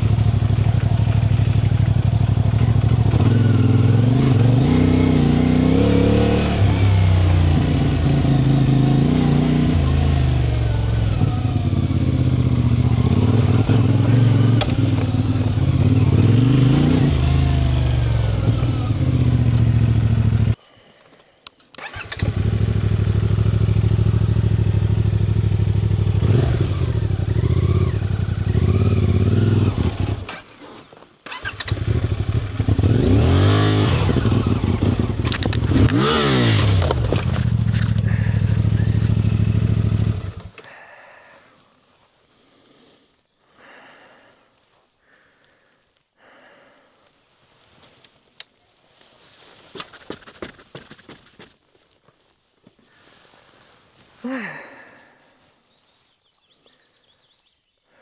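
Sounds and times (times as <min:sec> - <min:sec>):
motorcycle engine running: 0:00.0 - 0:20.6, 0:21.8 - 0:30.4, 0:31.3 - 0:40.6, 0:49.8 - 0:51.5.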